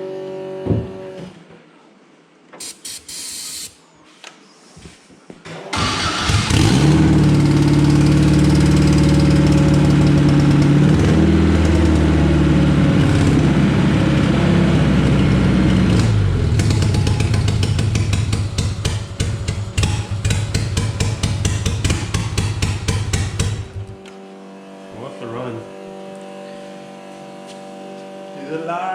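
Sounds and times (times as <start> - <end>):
engine cranking on starter: 5.7 - 12.2, 14.2 - 24.0.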